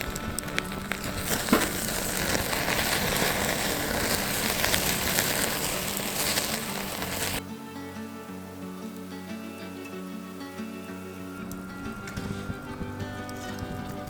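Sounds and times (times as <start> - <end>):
food sizzling in a hot pan: 0.0 - 7.4.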